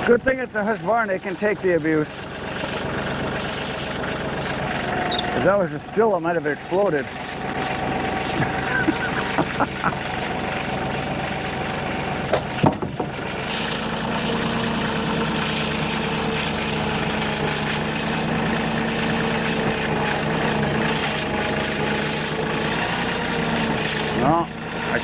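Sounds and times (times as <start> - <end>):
chainsaw cutting log: 0.0 - 25.0
sharp knocks: 12.3 - 13.2.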